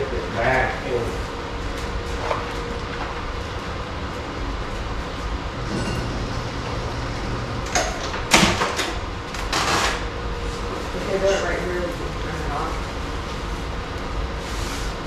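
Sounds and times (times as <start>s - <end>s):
steady low rumble: 0.9s - 9.4s.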